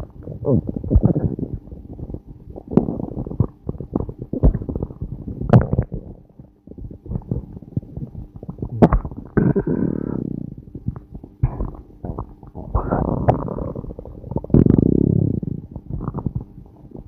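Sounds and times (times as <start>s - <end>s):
stomach growling and gurgling: 0.0s - 17.0s.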